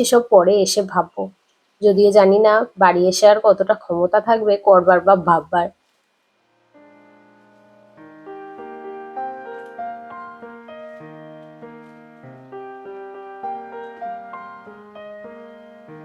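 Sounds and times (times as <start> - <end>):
gentle piano melody: 6.6 - 16.0.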